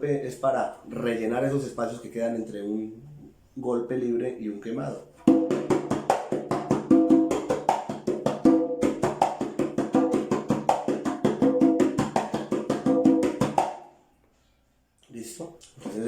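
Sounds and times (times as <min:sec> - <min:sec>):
congas played with hands: 0:05.2 - 0:14.0.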